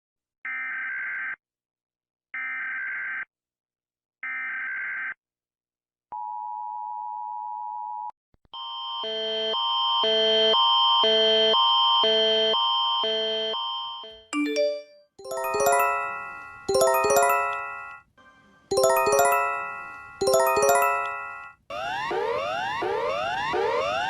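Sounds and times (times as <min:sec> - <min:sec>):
electronic chime alternating notes: 0:14.4 - 0:18.0, 0:18.7 - 0:21.5.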